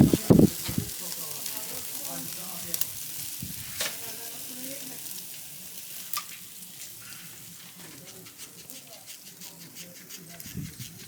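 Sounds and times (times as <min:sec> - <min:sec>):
food frying sizzle: 0:00.0 - 0:08.5.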